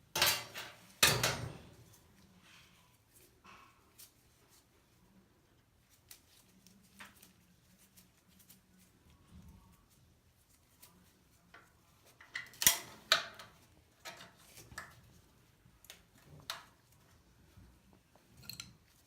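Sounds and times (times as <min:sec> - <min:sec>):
metal tools clinking: 0:18.3 - 0:18.9.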